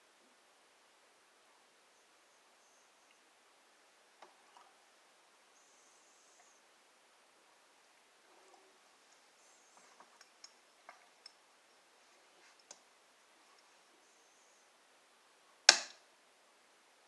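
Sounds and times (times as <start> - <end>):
loud sharp plastic clack: 15.7 - 16.0.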